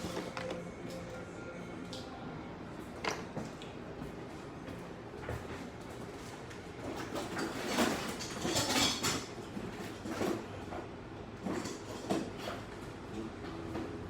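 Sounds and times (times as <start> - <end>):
scraping and rattling of tools: 6.9 - 10.4.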